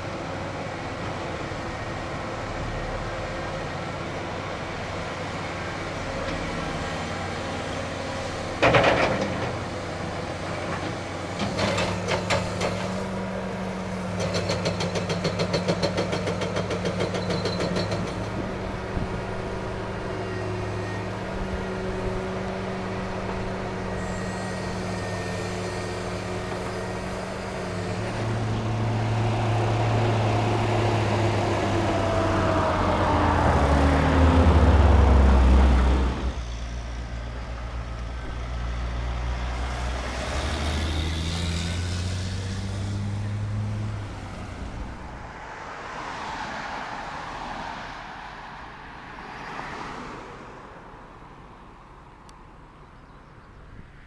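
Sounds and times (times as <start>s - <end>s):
construction machinery diesel engines: 0.0s - 54.0s.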